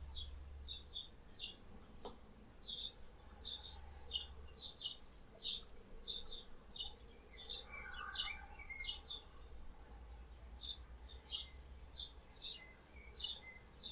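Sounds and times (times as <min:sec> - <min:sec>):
lower bird twittering call: 0:00.0 - 0:09.5
small birds chirping: 0:00.0 - 0:13.9.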